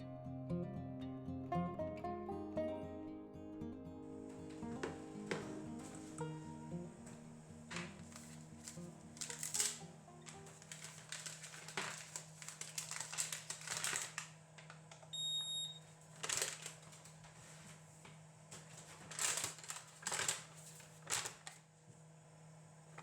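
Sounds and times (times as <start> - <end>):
rustling and light clattering: 4.3 - 6.3, 7.0 - 14.9, 16.2 - 21.6.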